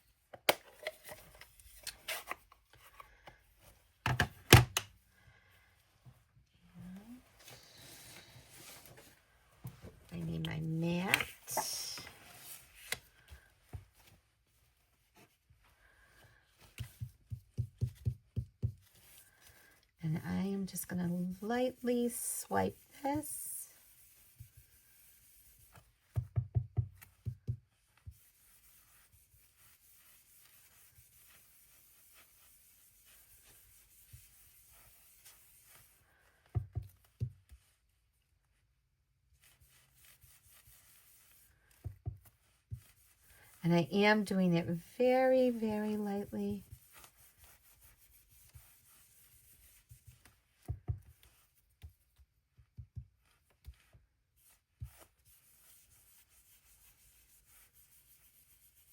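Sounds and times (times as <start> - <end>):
handling on a craft table: 0.0 - 5.1, 5.8 - 20.0, 45.2 - 58.8
brush scratching on cardstock: 16.5 - 26.2, 27.0 - 36.0, 39.4 - 58.9.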